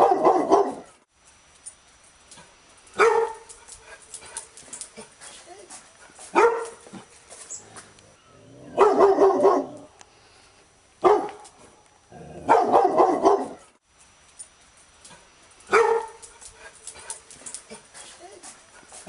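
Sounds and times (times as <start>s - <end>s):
dog barking: 0.0s - 1.0s, 3.0s - 3.5s, 6.3s - 6.8s, 8.7s - 9.9s, 11.0s - 11.4s, 12.4s - 13.7s, 15.7s - 16.2s.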